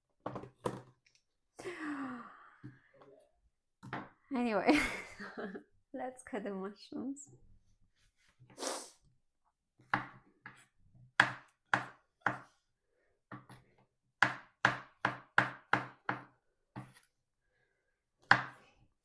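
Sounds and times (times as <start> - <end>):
knife chopping on a board: 9.9 - 12.5, 14.2 - 17.0.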